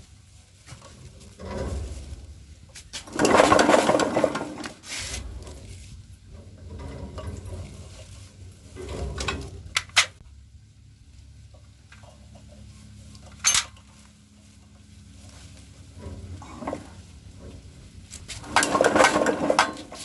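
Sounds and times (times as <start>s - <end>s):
diesel engine cranking: 0.8s - 10.2s, 14.6s - 20.0s.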